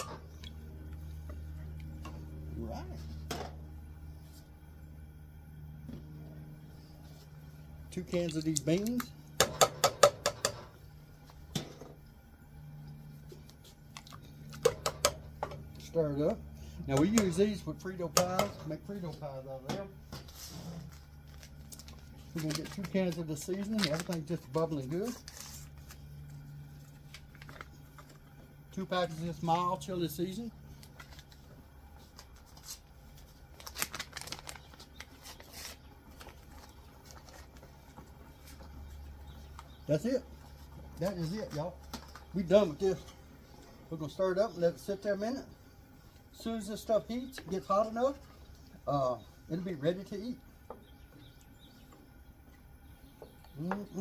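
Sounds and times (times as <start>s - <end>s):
faint low hum: 0.0s - 54.0s
paper packets rustling: 20.2s - 28.2s, 30.7s - 39.0s.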